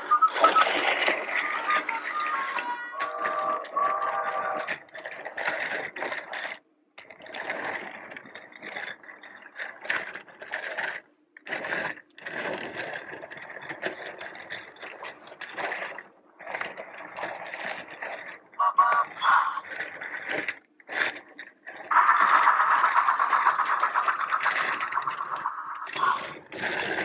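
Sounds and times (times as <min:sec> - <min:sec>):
toy train motor whirring: 0:00.1 - 0:27.0.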